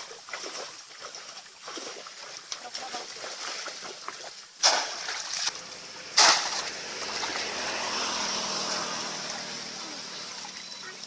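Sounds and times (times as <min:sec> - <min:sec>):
running trickling water: 0:00.0 - 0:11.0
loud splashes in water: 0:04.6 - 0:11.0.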